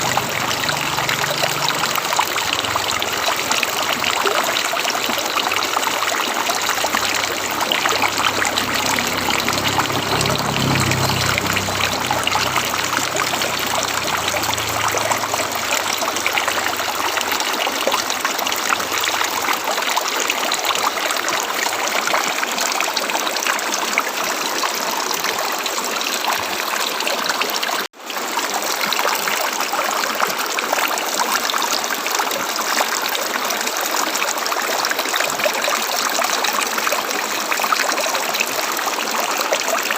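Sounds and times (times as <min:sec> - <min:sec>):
river water rushing: 0:00.0 - 0:39.9
low rumble: 0:05.2 - 0:17.5.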